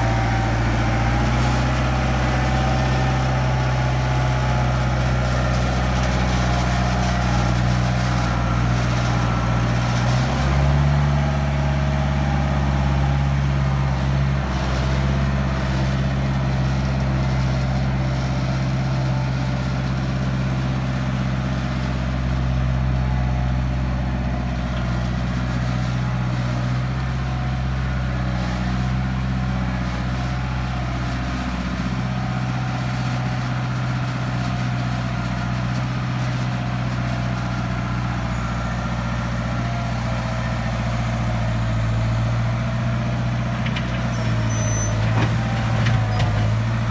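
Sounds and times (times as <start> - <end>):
diesel engine running: 0.0 - 46.9.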